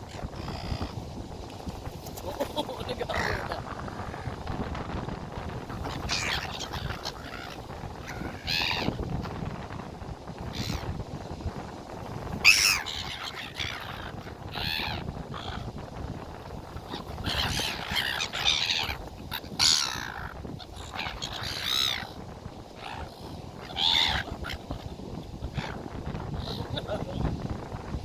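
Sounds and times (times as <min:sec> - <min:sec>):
birds harsh calls: 0:02.1 - 0:04.4, 0:05.6 - 0:09.3, 0:10.4 - 0:11.0, 0:12.4 - 0:15.7, 0:16.8 - 0:22.2, 0:22.8 - 0:27.0.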